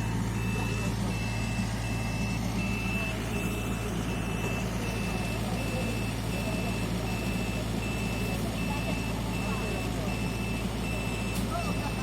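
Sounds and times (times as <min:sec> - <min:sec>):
diesel engine droning: 0:00.0 - 0:12.0
reversing alarm beeping: 0:00.0 - 0:12.0.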